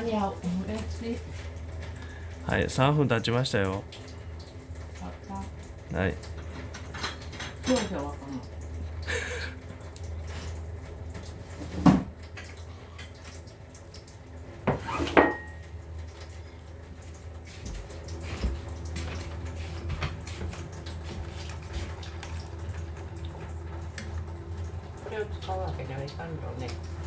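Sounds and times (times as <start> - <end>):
pots and utensils clanking: 6.3 - 8.2, 14.6 - 15.8.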